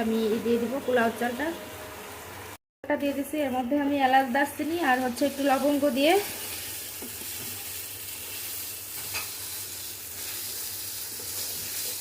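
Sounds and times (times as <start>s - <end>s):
rice sizzling in hot oil: 3.1s - 12.0s.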